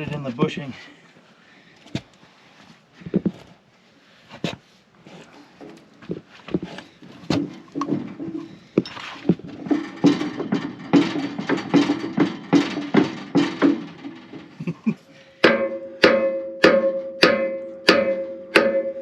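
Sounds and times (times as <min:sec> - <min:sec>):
hammer striking steel pin: 0:15.4 - 0:19.0.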